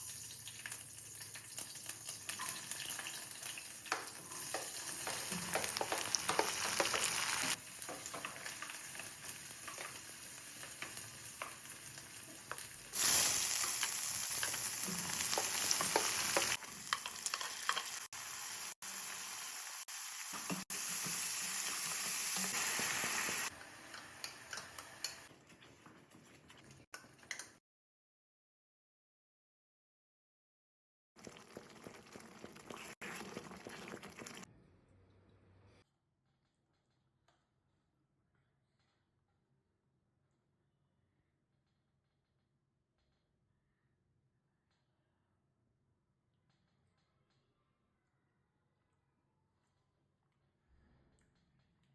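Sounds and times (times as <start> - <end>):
food sizzling in a pan: 0.0 - 25.3.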